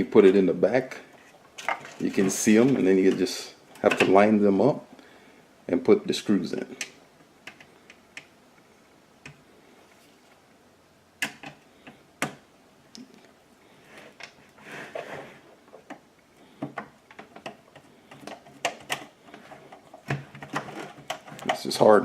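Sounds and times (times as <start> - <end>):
rustling: 7.5 - 10.6, 13.0 - 22.0.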